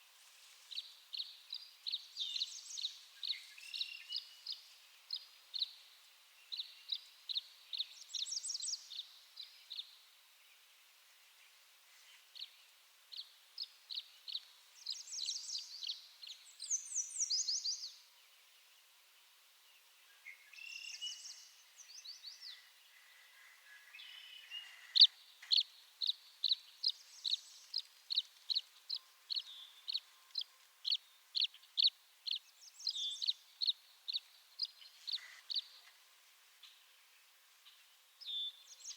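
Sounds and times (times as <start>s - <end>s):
swallow chirping and twittering: 24.1s - 35.9s.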